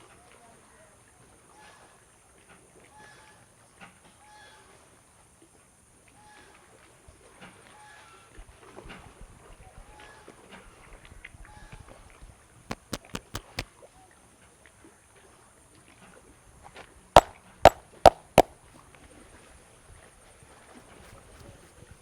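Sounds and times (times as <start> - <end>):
hand slaps on head: 12.7 - 13.6, 17.2 - 18.5
sharp cracks: 12.7 - 13.6, 17.2 - 18.5.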